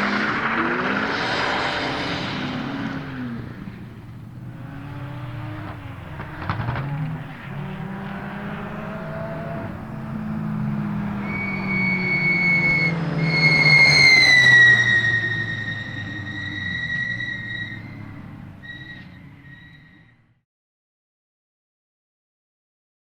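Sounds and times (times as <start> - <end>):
race car engine running: 0.0 - 13.1.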